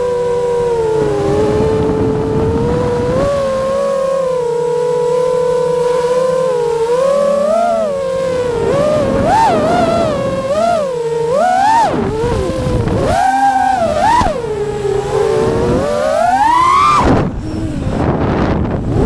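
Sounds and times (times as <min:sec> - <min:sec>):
drone propellers humming: 0:00.0 - 0:19.0.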